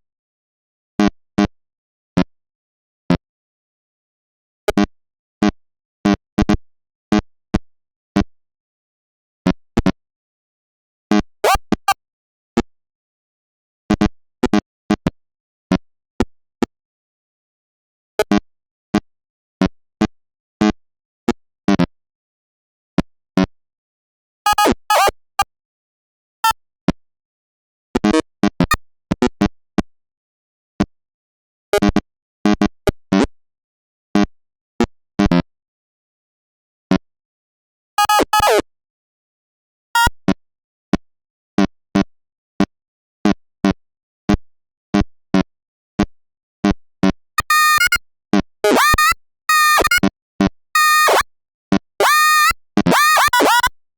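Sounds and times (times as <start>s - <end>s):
short synth blips and plops: 47.4s - 48.0s, 48.6s - 50.0s, 50.8s - 51.2s, 52.0s - 53.7s.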